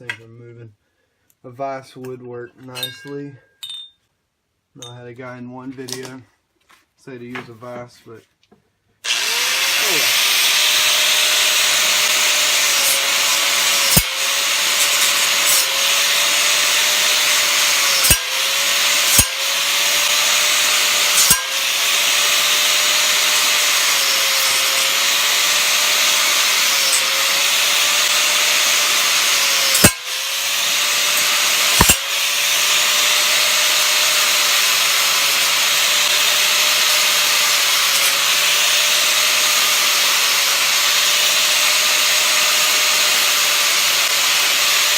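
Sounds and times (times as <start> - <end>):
angle grinder cutting metal: 9.0 - 44.9.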